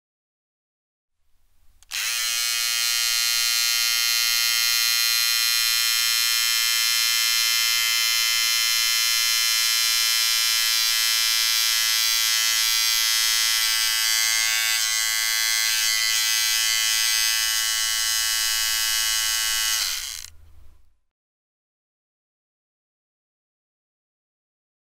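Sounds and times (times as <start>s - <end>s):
electric trimmer buzzing: 1.8s - 20.4s.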